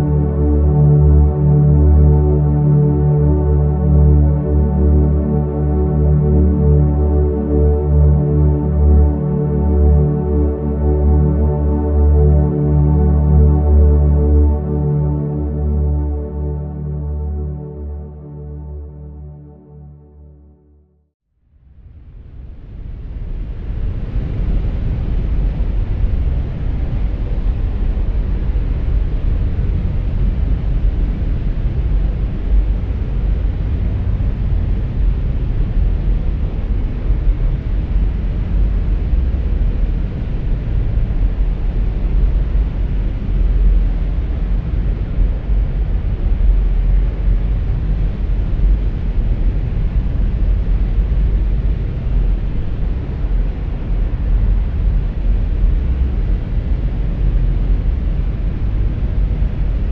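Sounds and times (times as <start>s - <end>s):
deep rumble: 21.5s - 59.9s.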